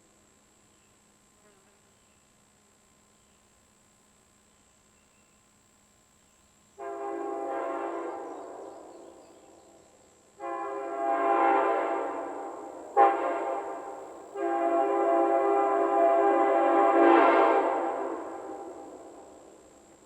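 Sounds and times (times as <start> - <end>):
locomotive air horn blasts: 6.8 - 9.2, 10.4 - 20.0.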